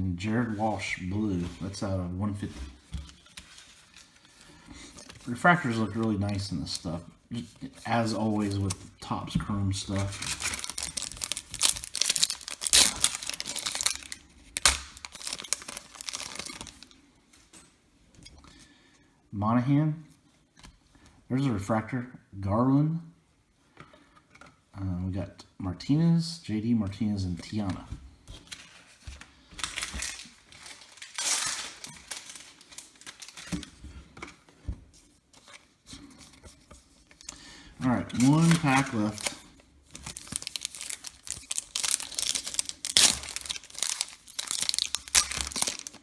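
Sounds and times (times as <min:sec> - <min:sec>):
cards rustling: 0:00.3 - 0:16.9, 0:27.4 - 0:46.0
foil wrapper crinkling and tearing: 0:09.8 - 0:17.0, 0:29.5 - 0:33.8, 0:37.2 - 0:46.0.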